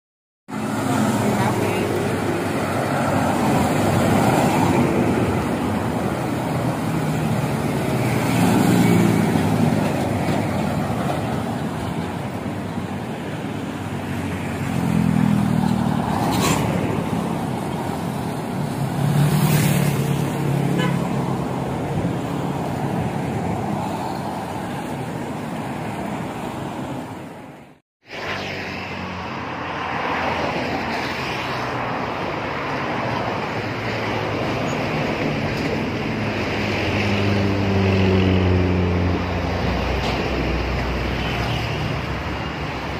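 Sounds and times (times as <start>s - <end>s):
buses and trucks passing: 0.5s - 42.9s
traffic noise: 0.5s - 42.9s
horn blasts: 20.7s - 21.1s.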